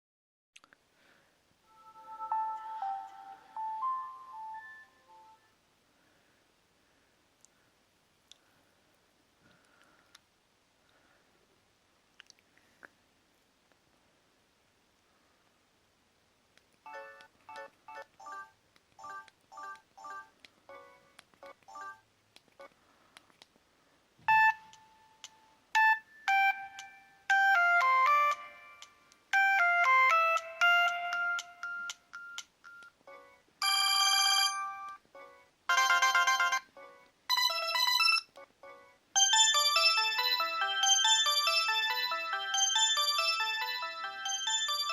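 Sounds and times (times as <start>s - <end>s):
phone ringtone melodies: 1.7s - 5.5s, 16.9s - 22.0s, 25.8s - 44.9s.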